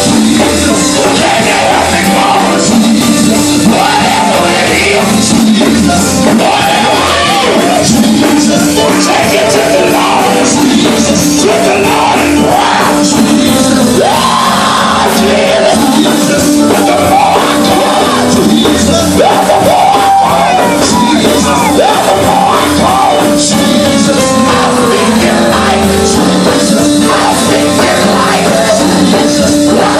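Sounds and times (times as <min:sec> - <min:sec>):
full band playing: 0:00.0 - 0:29.9
gospel voices singing and shouting: 0:00.0 - 0:29.9.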